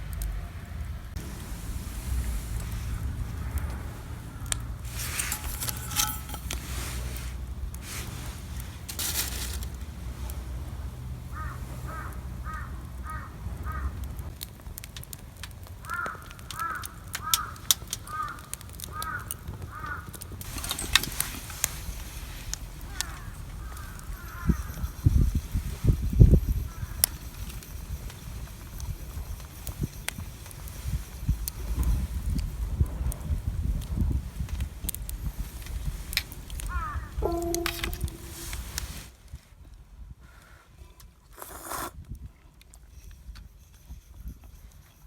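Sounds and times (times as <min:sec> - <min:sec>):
low steady rumble: 0:00.0 - 0:14.4
crow cawing: 0:11.3 - 0:14.0, 0:15.8 - 0:20.1, 0:22.9 - 0:24.8, 0:36.7 - 0:38.4
sharp clicks and crackles: 0:13.6 - 0:25.2.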